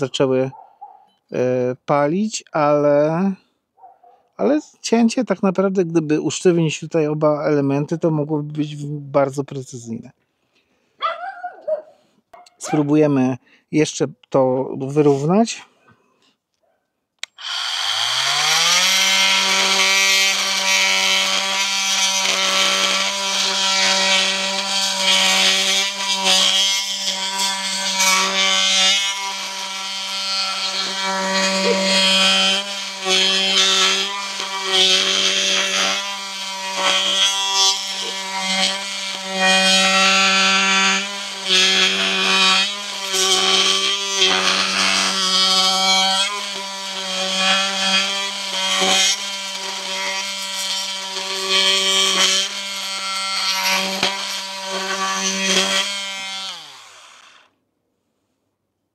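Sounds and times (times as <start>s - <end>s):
blade rasping in wood: 17.2s - 57.5s
oscillating multi-tool buzzing: 17.2s - 57.5s.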